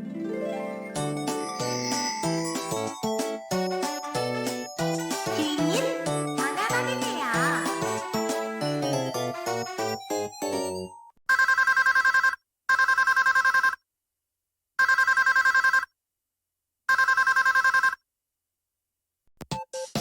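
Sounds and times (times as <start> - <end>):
ringtone melody: 0.2 - 11.2.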